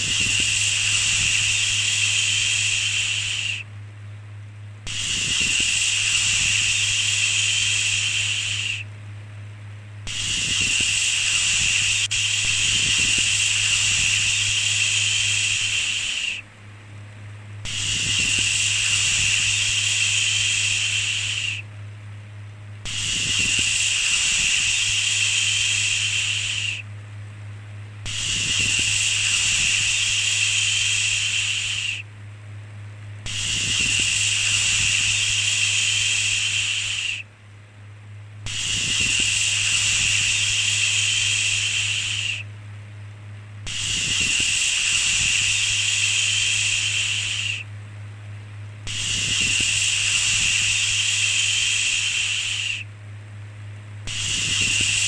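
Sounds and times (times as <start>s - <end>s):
steady low hum: 0.0s - 55.0s
person shushing: 10.1s - 16.4s, 22.9s - 26.8s.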